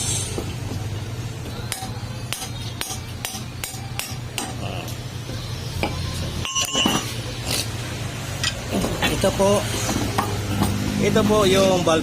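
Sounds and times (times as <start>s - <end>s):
low machine hum: 0.0s - 12.0s
metal clinks and taps: 5.8s - 7.1s.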